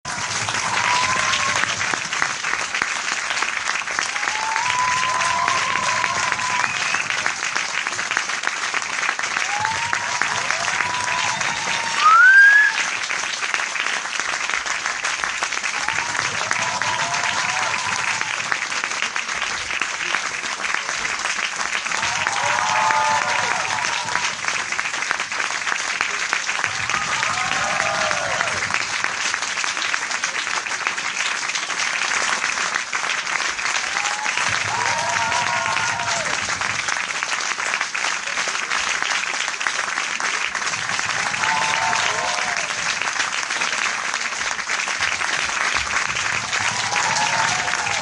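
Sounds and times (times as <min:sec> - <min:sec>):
cheering voices: 0:00.0 - 0:02.6, 0:03.3 - 0:13.1, 0:15.6 - 0:25.2, 0:26.0 - 0:29.3, 0:33.3 - 0:37.3, 0:40.1 - 0:48.0
audience applauding: 0:00.0 - 0:48.0.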